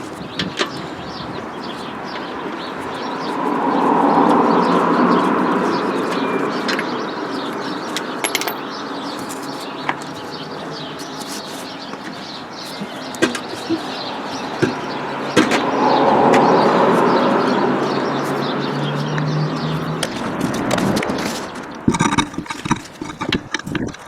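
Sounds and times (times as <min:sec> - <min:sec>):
birds chirping: 0:00.0 - 0:24.0
outdoor background noise: 0:00.0 - 0:24.0
sharp clicks and knocks: 0:08.0 - 0:08.7, 0:20.0 - 0:24.0.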